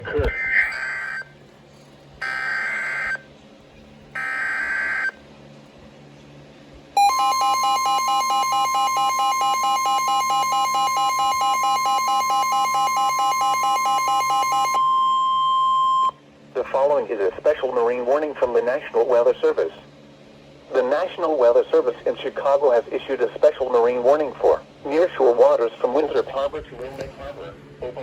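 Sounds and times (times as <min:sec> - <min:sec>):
steady warning alarm tone: 0:00.3 - 0:01.4, 0:02.2 - 0:03.3, 0:04.1 - 0:05.2, 0:07.0 - 0:16.2
fast pulsing electronic beep: 0:07.0 - 0:16.1.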